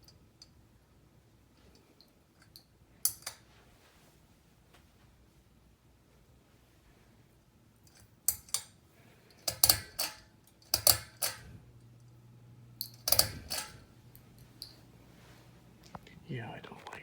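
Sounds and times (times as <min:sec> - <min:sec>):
fan motor hum: 0:07.9 - 0:17.0
pull-chain switch clicking: 0:09.4 - 0:11.4, 0:12.8 - 0:13.8.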